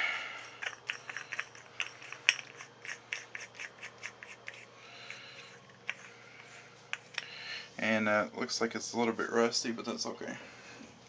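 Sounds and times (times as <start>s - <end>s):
threads clicking and scraping: 0.4s - 7.4s.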